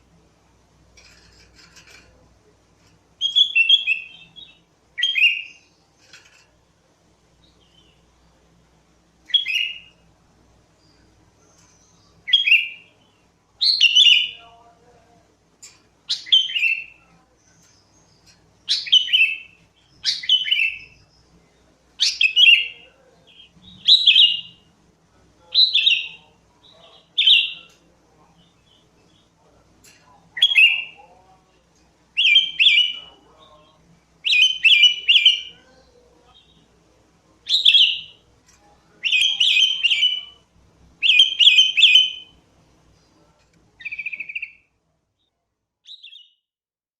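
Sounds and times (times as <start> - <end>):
bulbul singing: 3.2 - 6.0, 9.3 - 10.0, 10.7 - 14.7, 15.6 - 24.7, 25.5 - 31.2, 32.2 - 36.7, 37.4 - 43.2, 43.8 - 44.7, 45.9 - 46.4.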